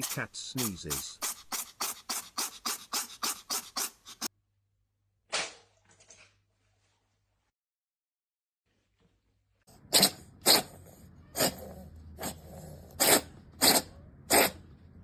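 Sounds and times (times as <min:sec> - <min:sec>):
cat sneezing: 0:09.9 - 0:12.4, 0:13.0 - 0:14.6.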